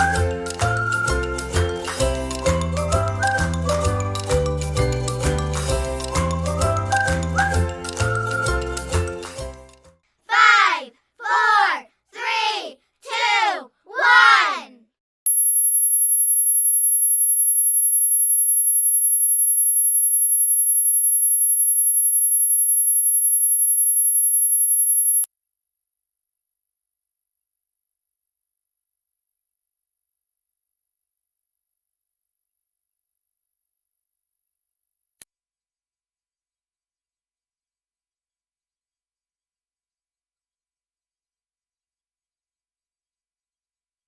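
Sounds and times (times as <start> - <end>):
high-pitched electronic tone: 25.2 - 44.0.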